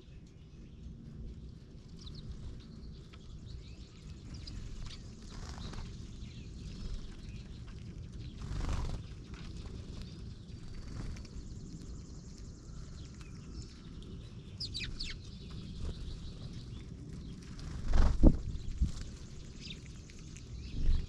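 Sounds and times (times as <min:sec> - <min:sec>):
low outdoor rumble: 0:00.0 - 0:21.0
small birds chirping: 0:00.0 - 0:21.0.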